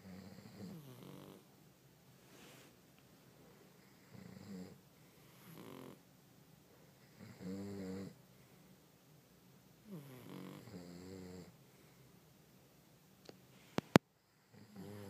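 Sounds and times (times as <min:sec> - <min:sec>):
dog snoring: 0:00.0 - 0:01.5, 0:03.8 - 0:06.0, 0:07.0 - 0:08.2, 0:09.8 - 0:11.6, 0:14.4 - 0:15.0.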